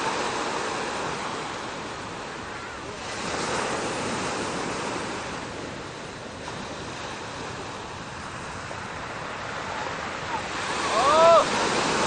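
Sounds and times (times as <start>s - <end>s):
waves breaking on beach: 0.0s - 12.0s
wind on microphone: 0.0s - 12.0s.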